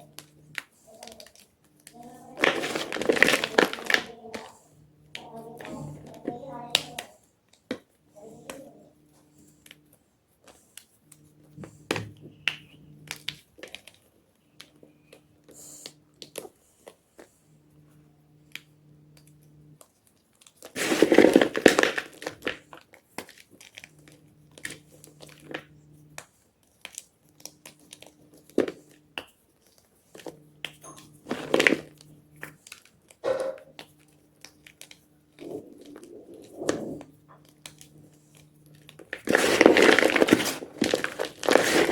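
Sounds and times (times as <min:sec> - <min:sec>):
chalk crunching and crumbling: 0:20.2 - 0:25.6, 0:31.1 - 0:41.9.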